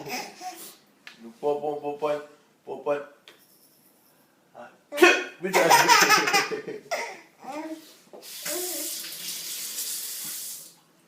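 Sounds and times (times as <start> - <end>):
baby giggling: 0.0 - 0.6, 5.5 - 7.6
steady hiss: 7.8 - 10.9.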